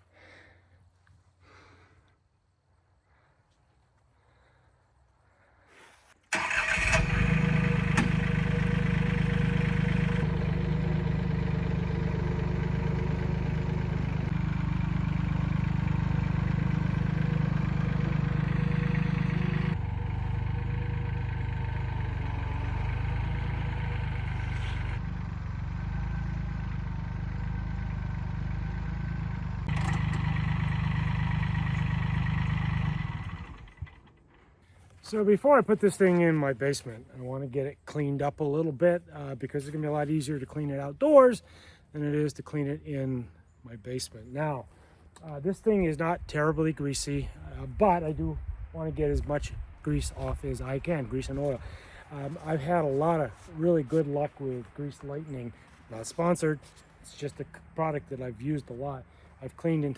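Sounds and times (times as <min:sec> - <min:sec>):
tractor engine running: 0:06.3 - 0:36.5, 0:45.2 - 0:59.9.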